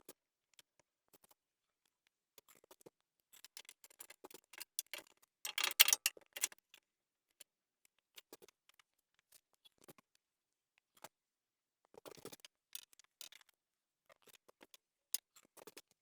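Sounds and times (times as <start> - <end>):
wooden parts and tools clicking: 4.8 - 6.5
scraping: 5.5 - 6.5.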